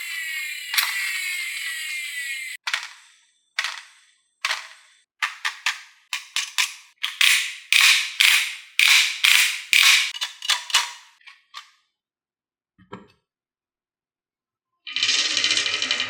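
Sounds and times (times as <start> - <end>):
marbles clattering down a marble run: 2.5 - 3.0, 3.6 - 11.0, 14.9 - 16.0.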